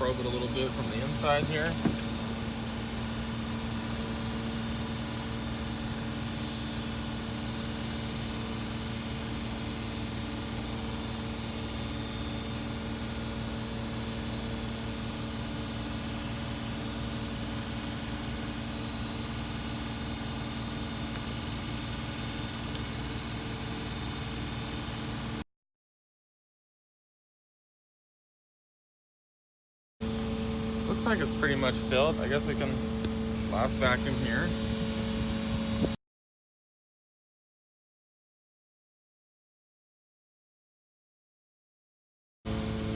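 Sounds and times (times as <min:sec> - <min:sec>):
machine hum: 0:30.0 - 0:36.0.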